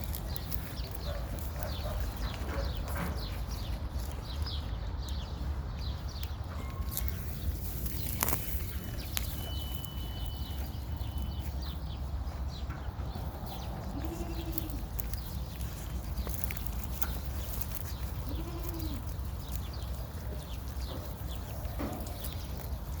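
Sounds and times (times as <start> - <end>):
livestock calling: 13.9 - 15.0, 17.9 - 19.2.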